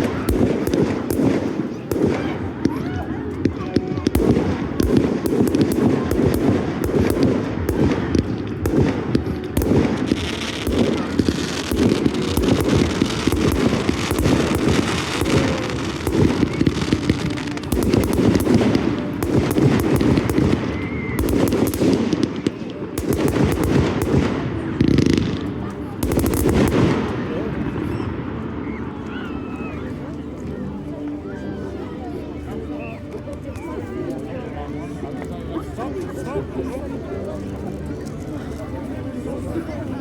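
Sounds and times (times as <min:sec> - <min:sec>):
fireworks bangs and crackle: 0:00.0 - 0:28.8.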